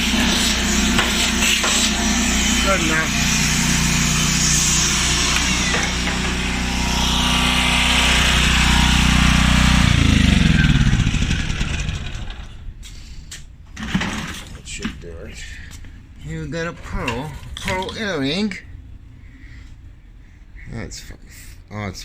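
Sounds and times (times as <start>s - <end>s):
vacuum cleaner running: 0.0s - 12.6s
vacuum motor winding down: 0.0s - 12.6s.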